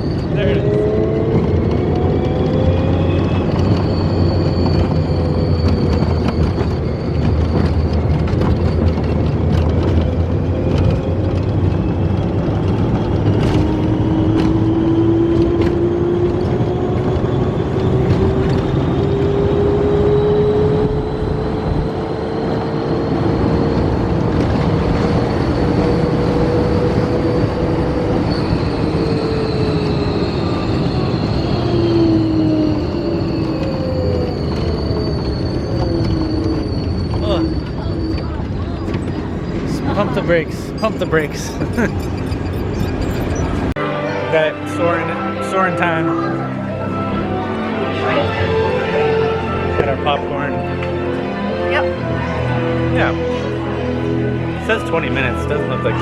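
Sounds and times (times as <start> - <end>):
wind noise: 0.0 - 43.8
ride vehicle rumbling: 0.0 - 56.0
motor whine rising in pitch: 0.2 - 38.0.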